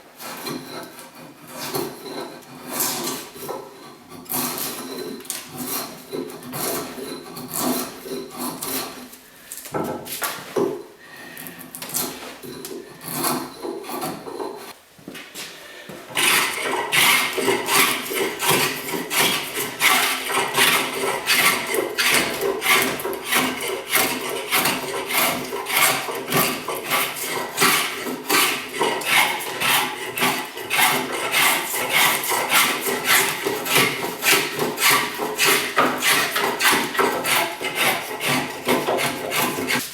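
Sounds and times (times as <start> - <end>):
stone scraping axe edge: 16.2 - 39.9.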